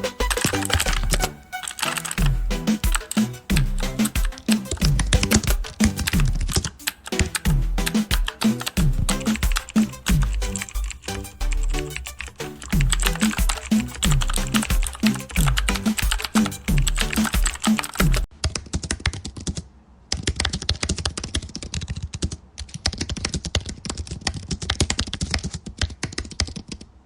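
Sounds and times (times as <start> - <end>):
background music with steady beat: 0.0 - 18.3
fast typing on keyboard: 0.3 - 3.3, 4.0 - 19.6, 20.2 - 26.9.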